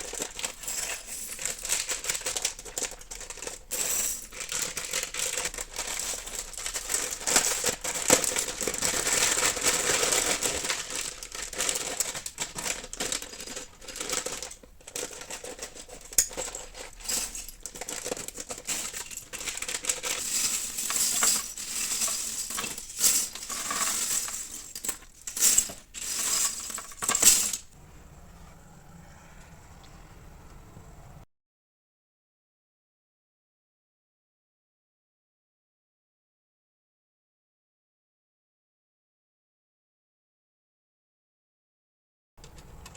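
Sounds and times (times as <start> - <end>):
plastic blocks clicking and clattering: 0.0 - 27.7.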